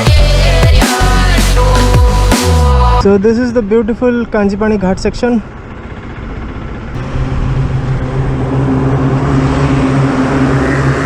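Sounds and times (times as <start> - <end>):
motorcycle engine running: 0.0 - 11.0
wind or road noise: 3.0 - 11.0.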